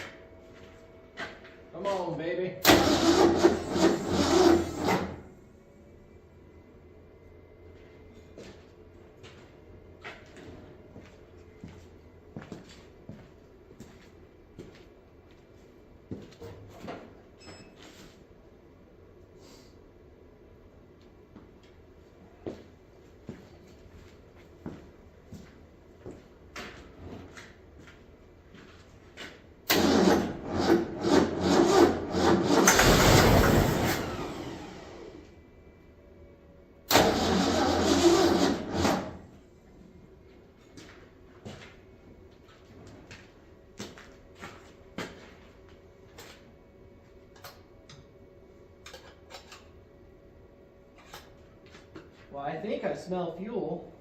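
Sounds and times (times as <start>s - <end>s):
engine cranking on starter: 2.6s - 5.2s, 29.7s - 35.2s, 36.9s - 39.2s.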